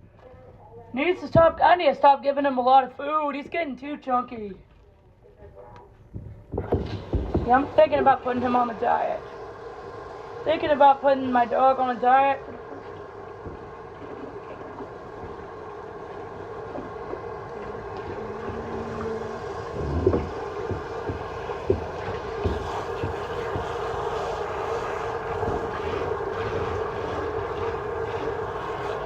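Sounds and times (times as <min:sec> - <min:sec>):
dull knocks: 0:06.1 - 0:07.7
water running from faucet: 0:07.0 - 0:29.0.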